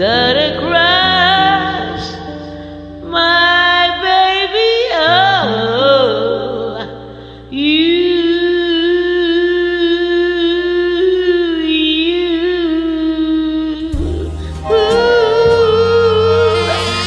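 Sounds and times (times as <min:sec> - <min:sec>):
person singing with vibrato: 0:03.1 - 0:17.0
jazz backing track: 0:13.8 - 0:17.0
saxophone: 0:13.8 - 0:17.0.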